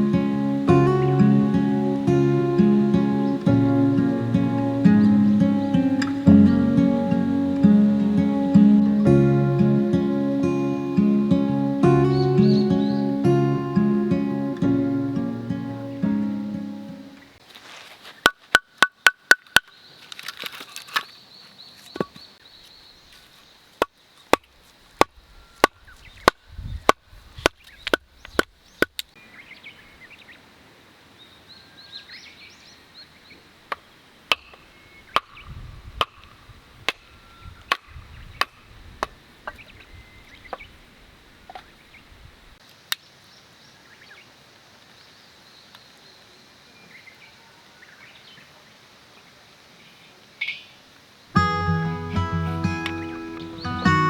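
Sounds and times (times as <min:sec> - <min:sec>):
plucked acoustic guitar: 0:00.0 - 0:17.2, 0:51.4 - 0:54.0
birds chirping faintly: 0:00.0 - 0:17.4, 0:36.3 - 0:54.0.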